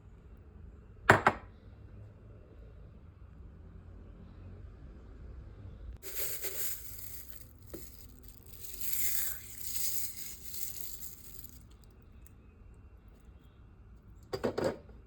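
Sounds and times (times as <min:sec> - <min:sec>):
crinkling rustling noise: 0:06.0 - 0:11.8.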